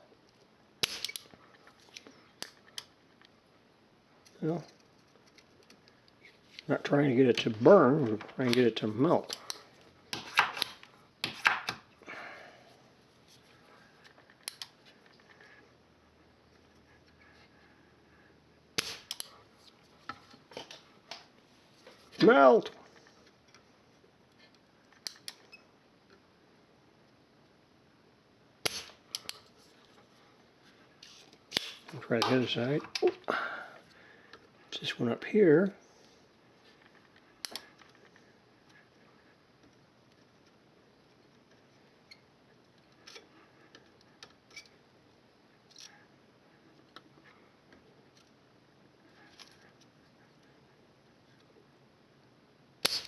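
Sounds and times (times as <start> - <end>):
solder sucker snap: 0.8 - 1.2, 18.8 - 19.3, 28.6 - 29.4, 31.5 - 32.4
faint tool clicks and taps: 37.4 - 37.9.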